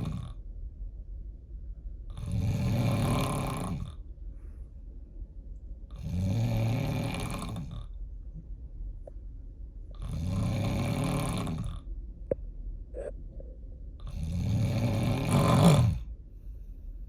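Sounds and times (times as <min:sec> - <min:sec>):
person snoring heavily: 0:00.0 - 0:00.3, 0:02.1 - 0:04.0, 0:06.0 - 0:07.9, 0:10.0 - 0:11.9, 0:14.0 - 0:16.1.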